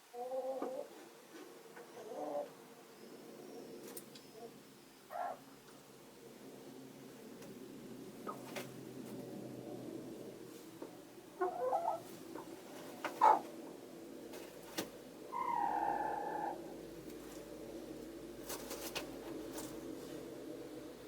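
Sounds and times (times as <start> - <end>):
hens clucking and squawking: 0.1 - 1.1, 10.8 - 17.5
steady low hum: 1.0 - 21.0.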